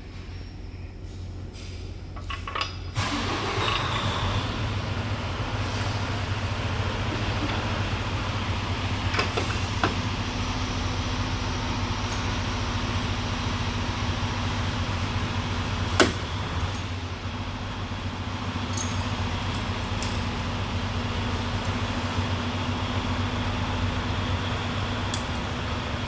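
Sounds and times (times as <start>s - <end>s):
low machine hum: 0.0s - 26.0s
light metal clicks: 25.1s - 25.6s.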